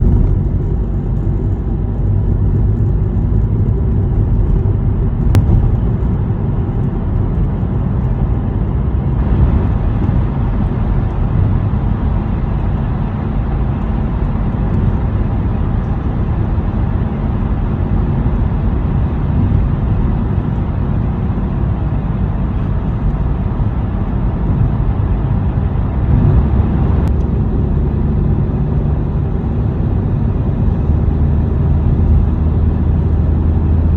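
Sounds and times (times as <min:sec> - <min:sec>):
car driving through tunnel: 0:00.0 - 0:33.9.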